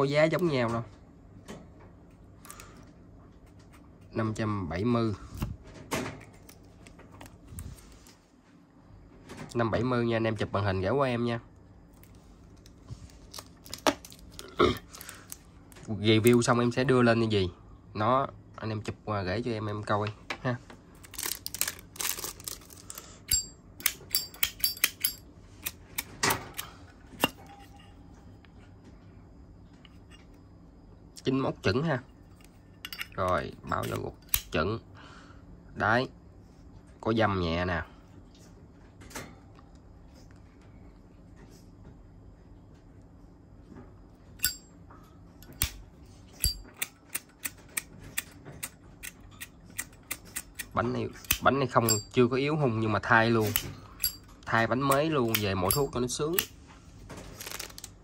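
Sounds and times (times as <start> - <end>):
short ringing clink: 23.3 - 25.2, 44.4 - 44.7, 51.8 - 52.2
lighter flint wheel clicking: 46.4 - 52.0.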